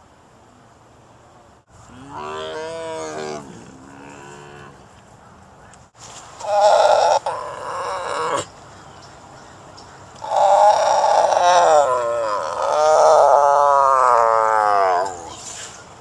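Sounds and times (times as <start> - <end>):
tiger roaring: 2.0 - 4.8, 6.4 - 8.5, 10.2 - 15.4.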